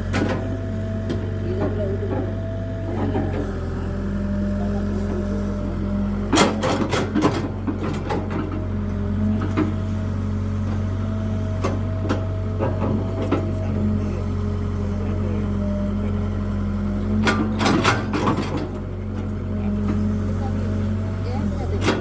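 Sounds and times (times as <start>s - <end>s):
excavator engine running: 0.0s - 22.0s
sharp clanks and knocks: 6.3s - 8.8s, 11.5s - 13.7s, 17.1s - 20.0s.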